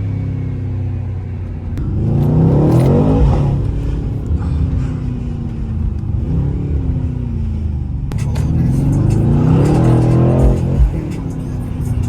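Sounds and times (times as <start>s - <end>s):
car engine while driving: 0.0s - 12.0s.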